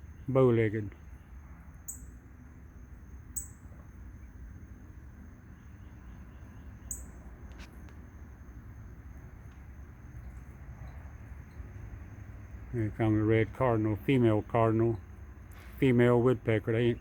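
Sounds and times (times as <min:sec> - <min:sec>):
high insect drone: 0:00.0 - 0:17.0
low outdoor rumble: 0:00.0 - 0:17.0.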